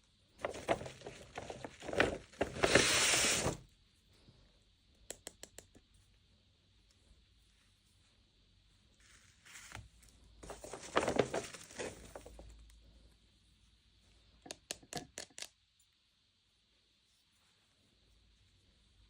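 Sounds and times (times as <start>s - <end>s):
packaging crinkled and torn: 0.4s - 3.5s, 10.4s - 12.5s.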